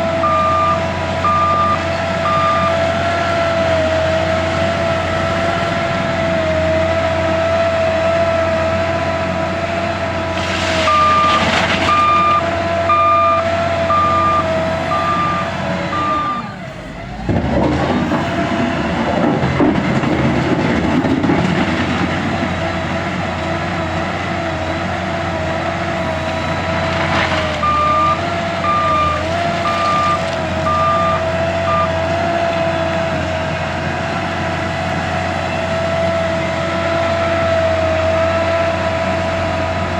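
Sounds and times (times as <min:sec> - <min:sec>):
wheel loader diesel engine: 0:00.0 - 0:39.9
reversing alarm beeping: 0:00.2 - 0:03.4, 0:10.8 - 0:17.0, 0:27.6 - 0:32.0.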